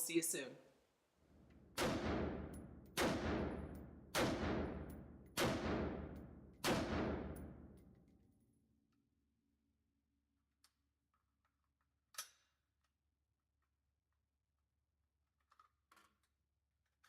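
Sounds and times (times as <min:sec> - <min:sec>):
rifle shots with echo: 0:01.7 - 0:07.8.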